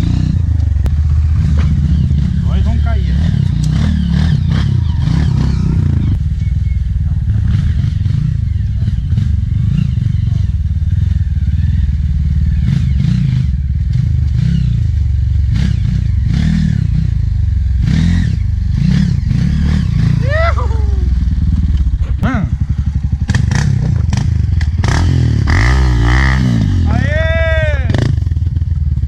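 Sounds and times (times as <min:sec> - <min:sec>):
motorcycle engine revving: 0:00.0 - 0:29.0
motorcycle clattering on rough ground: 0:00.5 - 0:02.0, 0:21.6 - 0:22.3, 0:23.2 - 0:25.0.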